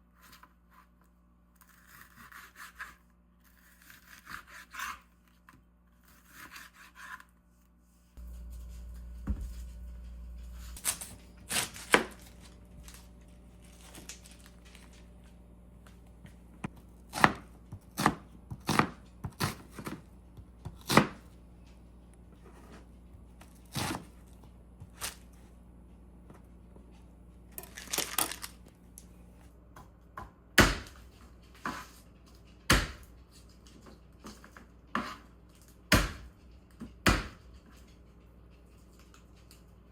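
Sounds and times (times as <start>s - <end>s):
knife chopping on cutting board: 16.6s - 21.3s, 30.2s - 31.1s, 32.7s - 33.1s, 35.9s - 36.3s, 37.1s - 37.4s.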